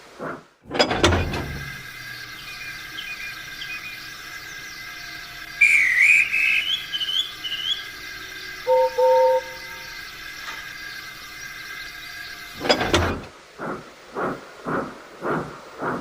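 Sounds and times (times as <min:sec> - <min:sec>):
steady high whistling tone: 0:01.4 - 0:13.2
wavering locomotive whistle: 0:02.4 - 0:10.3.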